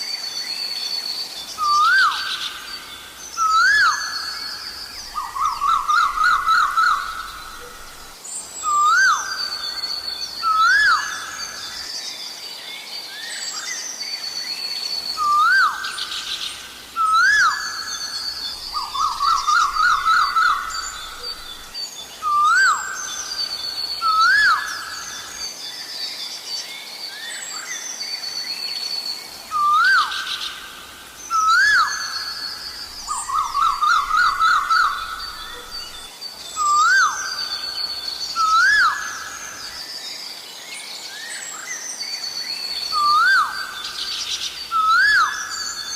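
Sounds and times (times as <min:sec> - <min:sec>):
small birds chirping: 0:13.7 - 0:45.9.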